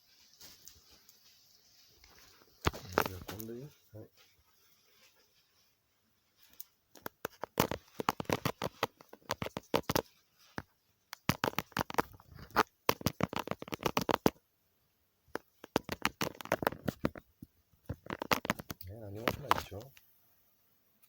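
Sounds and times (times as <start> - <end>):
rapid clicking and tapping: 7.0 - 14.4, 15.3 - 19.9.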